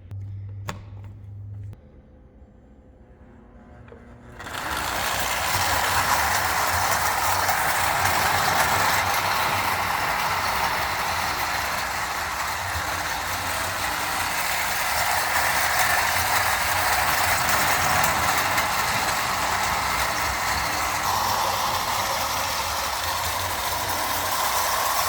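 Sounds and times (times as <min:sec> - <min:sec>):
toy train whirring and rattling: 0:03.9 - 0:25.0.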